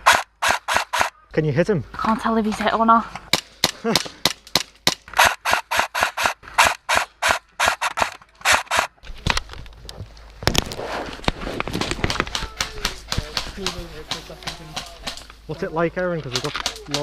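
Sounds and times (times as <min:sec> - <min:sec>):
airsoft gun shots: 0:00.0 - 0:01.1, 0:03.3 - 0:08.9.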